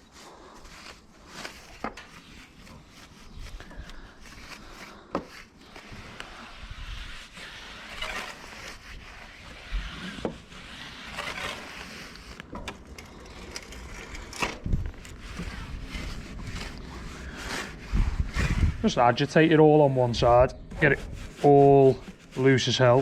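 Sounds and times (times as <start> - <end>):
brush scrubbing bike frame: 0.0 - 23.0.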